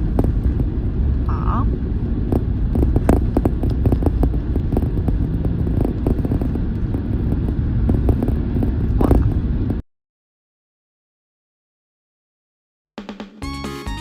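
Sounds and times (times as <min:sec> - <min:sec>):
road and engine rumble: 0:00.0 - 0:09.8.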